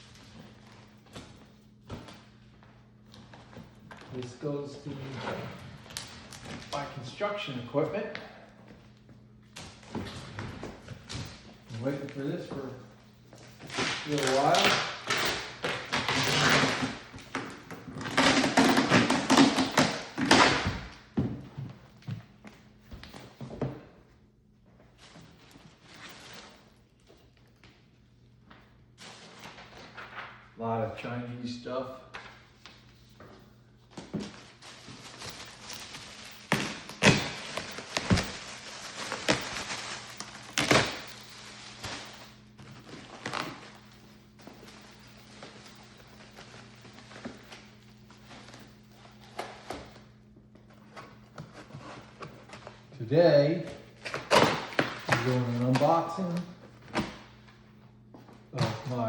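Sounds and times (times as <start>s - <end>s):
packaging scraping and rustling: 13.6s - 20.6s, 34.0s - 50.0s.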